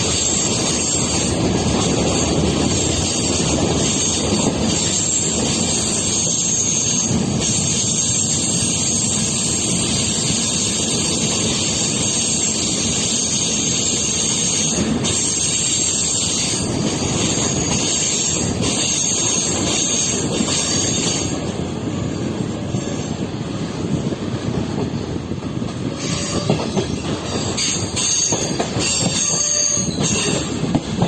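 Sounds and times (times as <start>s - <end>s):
train running on track: 0.0s - 31.0s.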